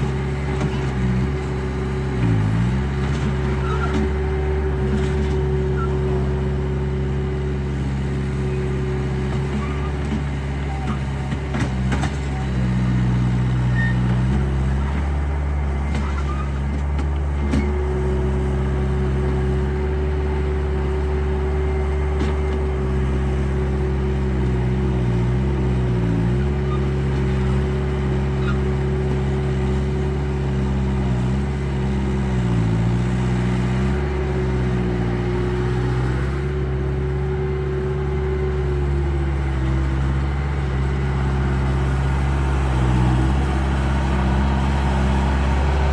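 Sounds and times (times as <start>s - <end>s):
low engine-like drone: 0.0s - 24.6s, 36.2s - 45.9s.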